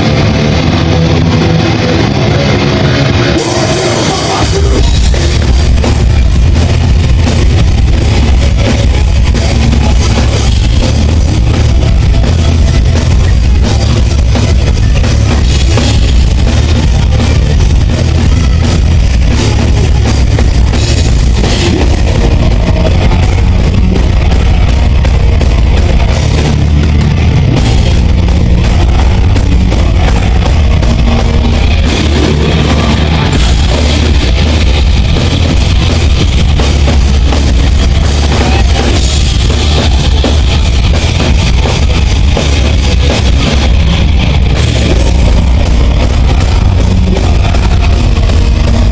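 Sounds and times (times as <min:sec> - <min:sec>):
heavy rock band playing: 0:00.0 - 0:48.9.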